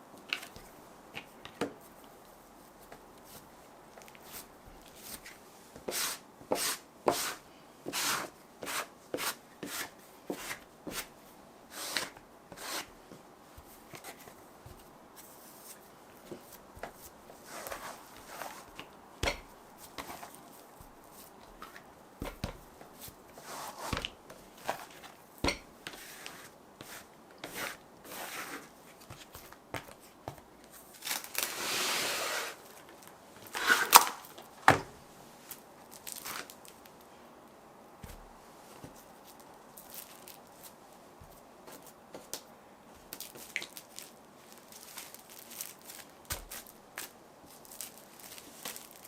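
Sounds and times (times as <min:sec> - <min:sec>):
rustling tear: 0:43.2 - 0:49.0.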